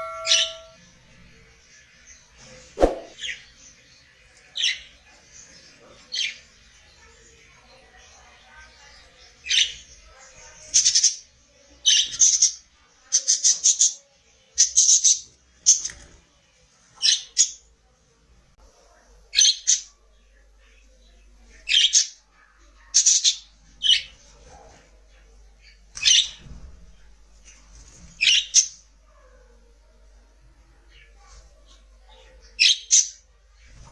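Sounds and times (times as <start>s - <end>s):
budgerigars chirping and squawking: 0.0s - 0.8s.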